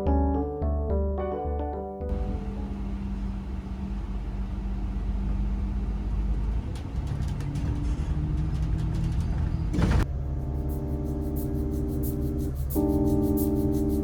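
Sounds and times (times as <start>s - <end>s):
vehicle rumble: 2.1s - 14.0s
soft background music: 10.0s - 14.0s.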